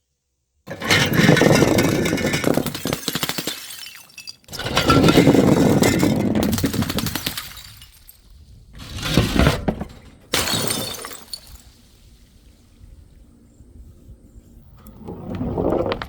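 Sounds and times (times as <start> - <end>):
glass bottles shattering: 0.7 - 8.4, 10.1 - 12.0.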